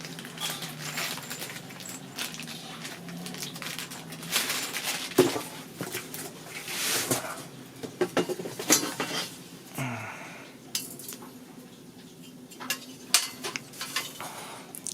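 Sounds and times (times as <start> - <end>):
packaging rustling: 0.0 - 6.2.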